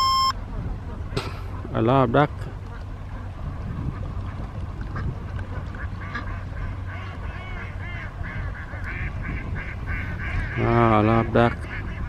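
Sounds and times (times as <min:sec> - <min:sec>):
ducks quacking: 0:02.7 - 0:12.0.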